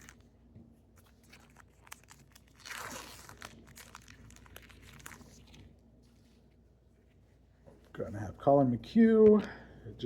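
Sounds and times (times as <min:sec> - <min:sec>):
wrapper tearing and crinkling: 0:00.0 - 0:00.2, 0:01.0 - 0:05.6.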